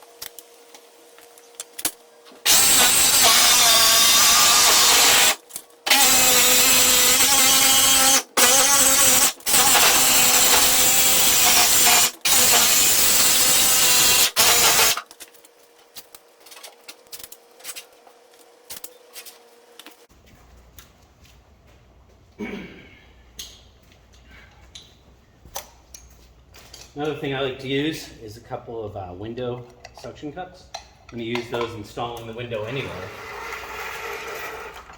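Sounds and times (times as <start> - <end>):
jigsaw cutting sheet metal: 2.4 - 15.0, 32.6 - 34.9.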